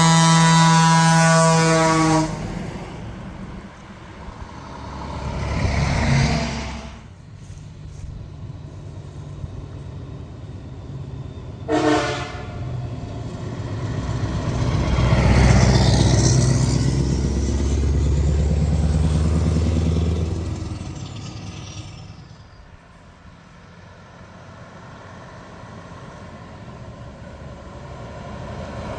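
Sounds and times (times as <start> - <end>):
truck horn blast: 0.0 - 3.0, 11.7 - 12.8
heavy truck engine passing: 0.0 - 28.9.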